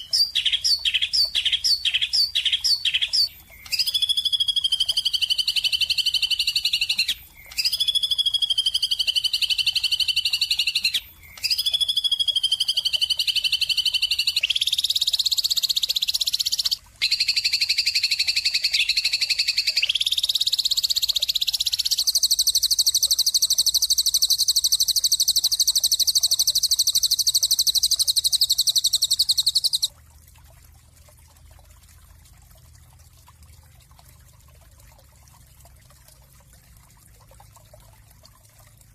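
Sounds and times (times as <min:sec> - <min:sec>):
bird singing buzzy trills: 0:00.0 - 0:29.9.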